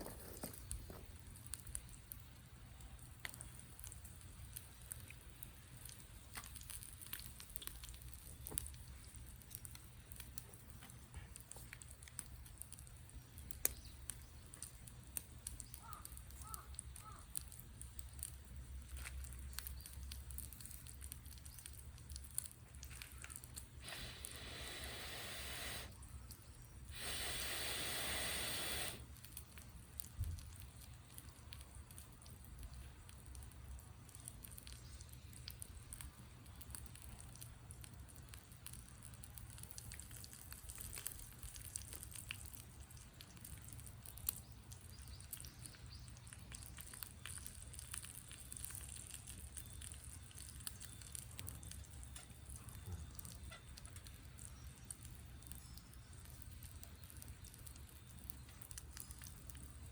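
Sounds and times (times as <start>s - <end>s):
campfire crackling and popping: 0.0s - 59.9s
loud rushing hiss: 23.8s - 25.9s, 26.9s - 29.0s.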